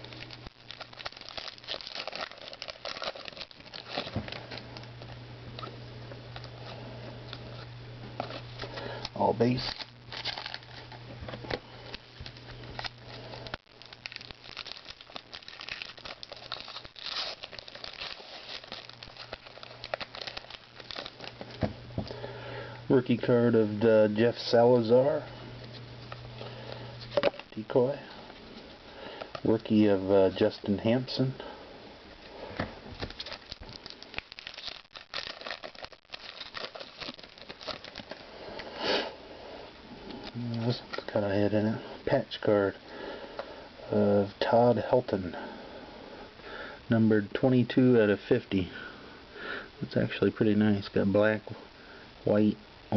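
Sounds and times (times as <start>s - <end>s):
card pack wrapper crinkling: 0.0s - 5.7s, 6.4s - 11.0s, 11.9s - 22.3s, 33.0s - 38.7s.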